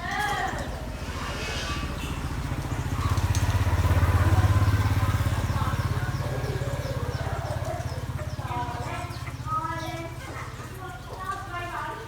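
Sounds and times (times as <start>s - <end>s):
motorcycle engine passing by: 0.1s - 11.3s.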